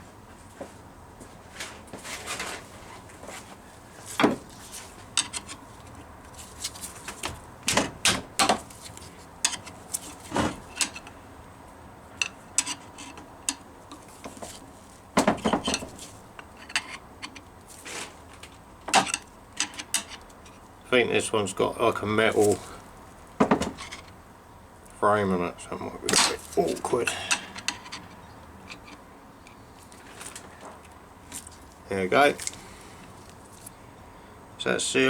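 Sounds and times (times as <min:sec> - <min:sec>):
metal tool scraping and clinking: 0:26.1 - 0:29.0.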